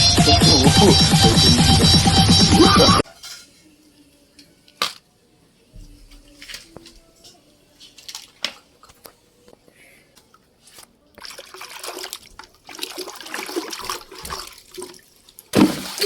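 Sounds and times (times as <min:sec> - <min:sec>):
water splashing and sloshing: 0:11.2 - 0:16.0.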